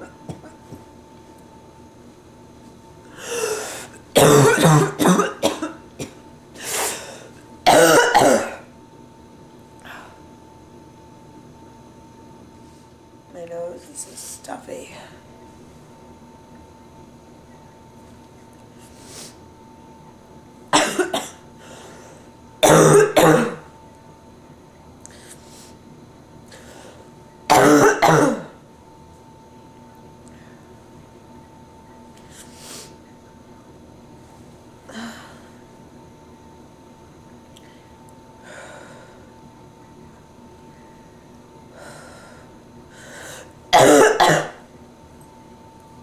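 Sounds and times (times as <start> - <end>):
woman coughing: 3.3 - 6.2, 7.7 - 8.7, 20.8 - 21.4, 22.6 - 23.7, 27.5 - 28.6, 43.8 - 44.6.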